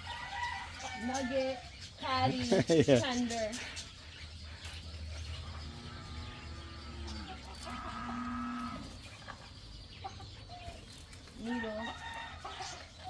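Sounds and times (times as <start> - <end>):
chickens calling: 0.0 - 13.0.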